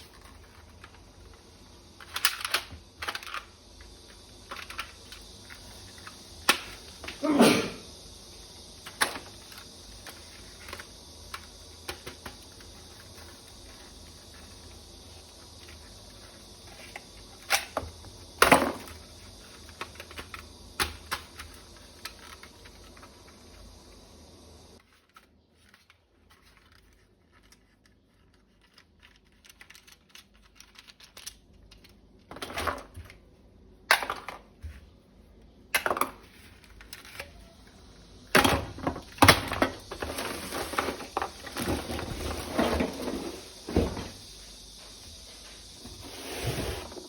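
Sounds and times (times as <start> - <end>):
hard plastic parts clattering: 38.3 - 44.2.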